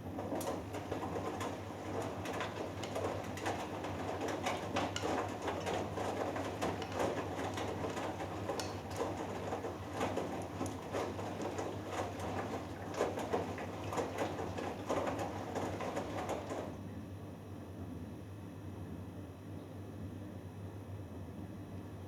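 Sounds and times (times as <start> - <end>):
washing machine drum tumbling: 0.0 - 16.8
washing machine motor hum: 0.0 - 17.2.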